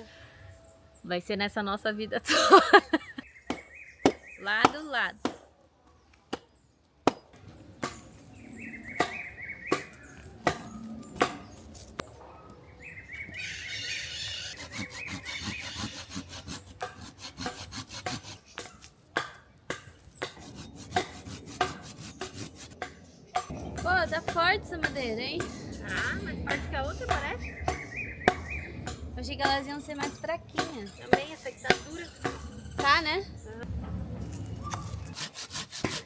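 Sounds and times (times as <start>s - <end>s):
hand saw cutting wood: 14.5s - 18.9s, 20.1s - 23.0s, 34.4s - 36.0s
sharp wooden knocks: 16.8s - 33.2s.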